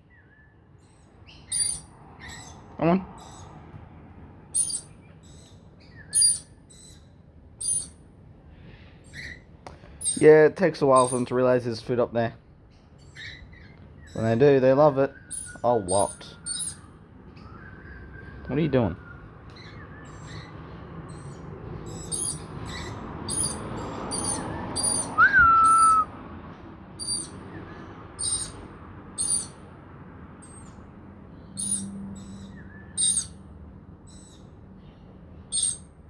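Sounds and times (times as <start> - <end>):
lorikeets screeching: 0.0 - 3.6, 4.5 - 8.0, 8.6 - 11.5, 12.7 - 26.1, 26.9 - 36.0
whistled bird note: 15.1 - 20.5, 23.3 - 26.1, 27.0 - 27.4.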